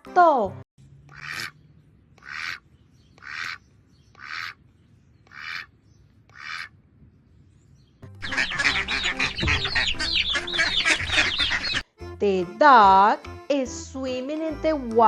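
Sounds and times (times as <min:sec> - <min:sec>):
duck quacking: 0:01.1 - 0:01.6, 0:02.2 - 0:02.6, 0:03.2 - 0:03.6, 0:04.2 - 0:04.6, 0:05.3 - 0:05.7, 0:06.3 - 0:06.7, 0:08.2 - 0:11.8
loud busy music: 0:08.2 - 0:11.8.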